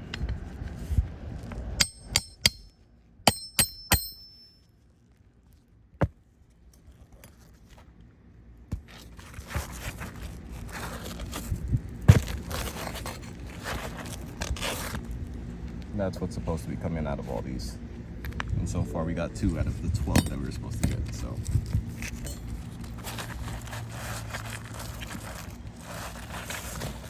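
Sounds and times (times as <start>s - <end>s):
metal tool clinking on metal: 3.3s - 4.6s, 20.1s - 20.6s
scraping on shingles: 8.8s - 15.2s, 21.4s - 27.0s.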